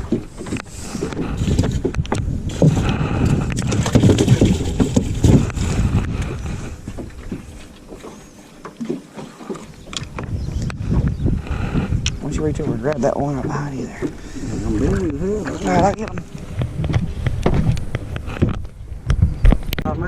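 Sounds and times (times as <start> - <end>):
knocking and clattering on boat: 0.0 - 20.0
low rumble: 10.0 - 20.0.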